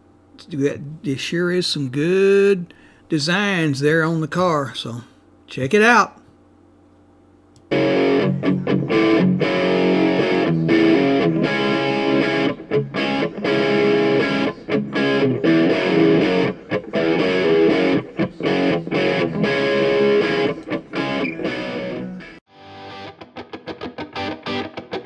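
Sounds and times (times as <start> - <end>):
rock music with electric guitar: 7.7 - 25.0.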